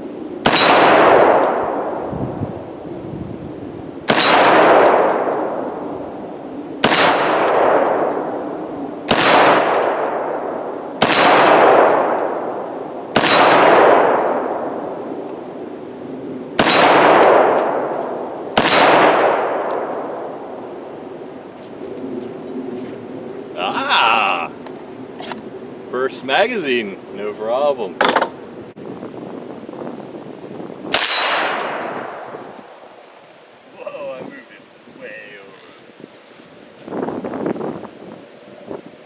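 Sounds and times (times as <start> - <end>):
rifle shots echoing: 0.4 - 1.9, 4.1 - 5.6, 6.8 - 8.3, 9.1 - 14.8, 16.6 - 17.9, 18.6 - 20.3, 30.9 - 32.4.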